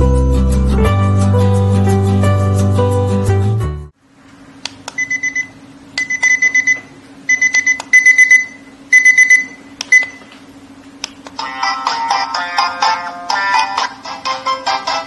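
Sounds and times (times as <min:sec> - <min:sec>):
alarm clock beeping: 0:05.0 - 0:10.2.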